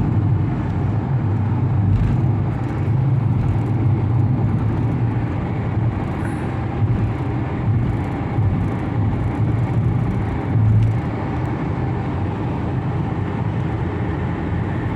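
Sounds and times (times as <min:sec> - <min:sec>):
car road noise: 0:00.0 - 0:14.9.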